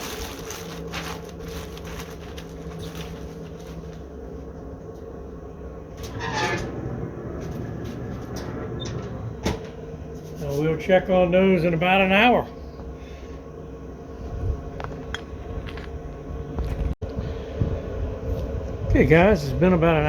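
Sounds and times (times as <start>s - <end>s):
foil rustling and knocks: 0.0s - 4.1s
steady low hum: 0.0s - 20.0s
scrape on smoker: 6.0s - 7.0s.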